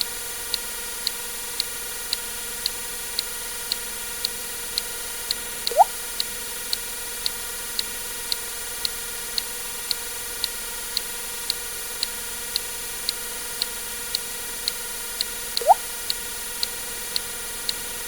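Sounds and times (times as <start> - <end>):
water drip plip: 5.7 - 5.9, 15.6 - 15.8
faint high tick: 14.1 - 17.8.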